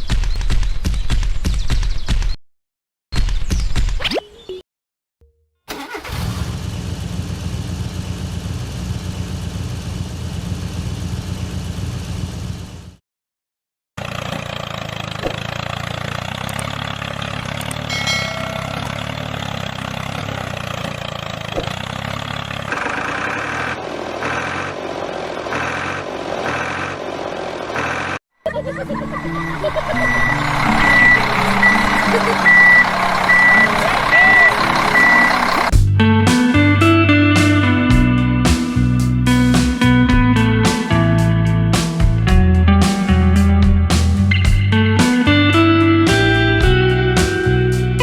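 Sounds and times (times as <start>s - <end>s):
engine running steadily: 5.7s - 13.0s, 14.0s - 28.2s, 29.1s - 36.5s
regular beeping: 29.2s - 35.7s.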